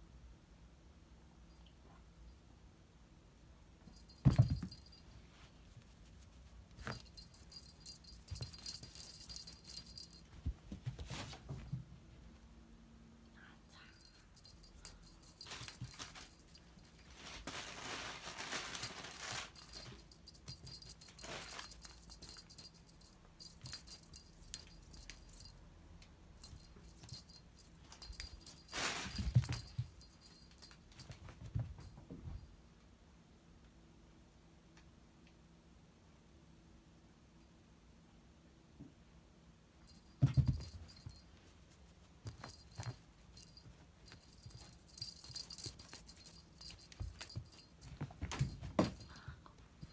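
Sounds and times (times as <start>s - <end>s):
cat toy jingling and rattling: 3.9s - 5.2s, 6.0s - 11.7s, 13.8s - 25.6s, 26.4s - 32.0s, 39.9s - 49.9s
rustling: 3.9s - 11.8s, 14.0s - 25.5s, 26.4s - 32.0s, 39.9s - 49.9s.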